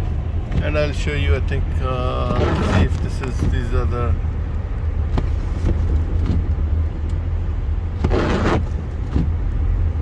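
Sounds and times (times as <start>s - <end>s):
car driving rumble in cabin: 0.0s - 10.0s.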